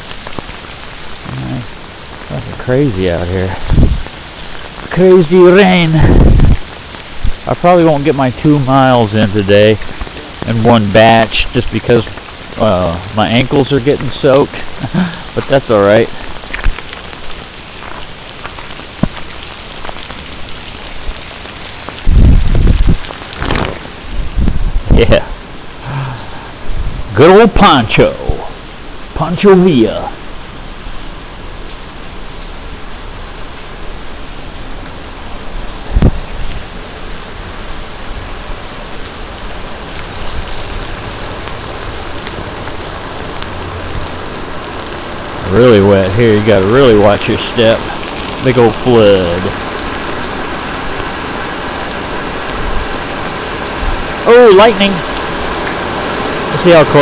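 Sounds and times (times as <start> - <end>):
rain on a nylon poncho: 0.0 - 57.0
low thuds on microphone: 35.9 - 36.3.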